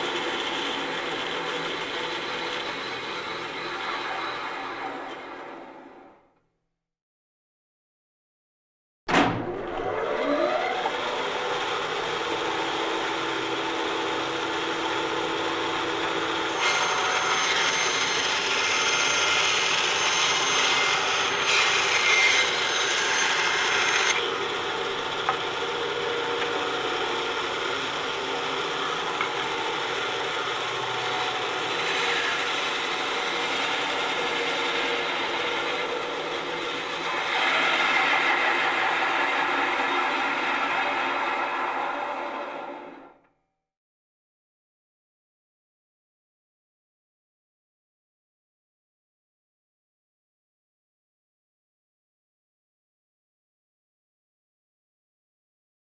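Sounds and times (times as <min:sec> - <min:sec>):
electric saw motor whining: 0:00.0 - 0:05.8, 0:09.6 - 0:43.2.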